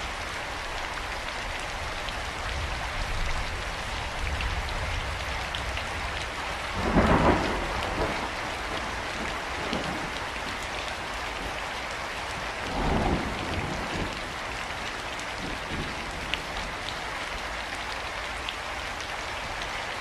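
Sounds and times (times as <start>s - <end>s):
steady rain falling: 0.0s - 20.0s
low rumbles of thunder: 4.1s - 10.6s, 12.6s - 16.9s.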